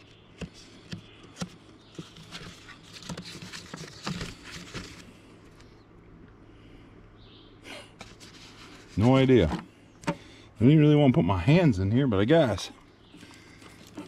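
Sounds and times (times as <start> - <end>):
objects rustling and scraping: 0.0 - 5.8, 8.0 - 10.2, 13.1 - 14.0.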